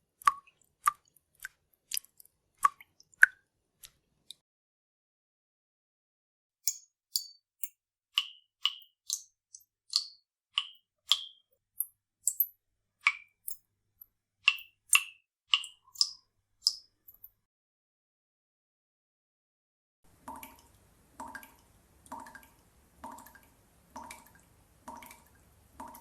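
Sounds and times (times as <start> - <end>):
water drops plinking: 14.5 - 17.3.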